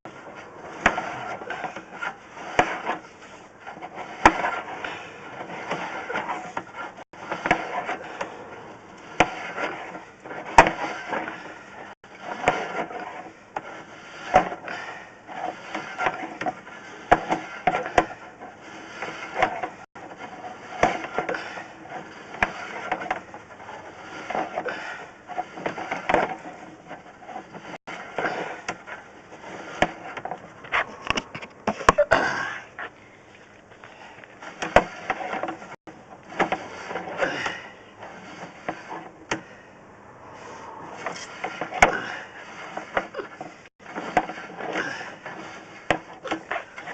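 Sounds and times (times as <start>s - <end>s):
rod scraping in drain pipe: 0.1s - 46.9s.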